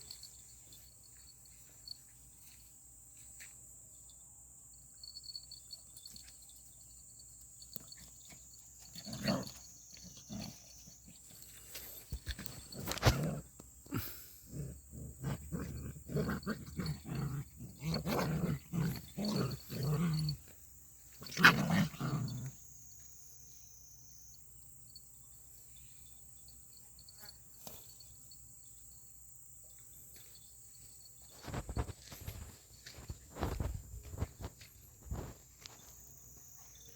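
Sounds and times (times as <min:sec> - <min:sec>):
dogs growling: 0:08.8 - 0:20.5, 0:21.2 - 0:22.5.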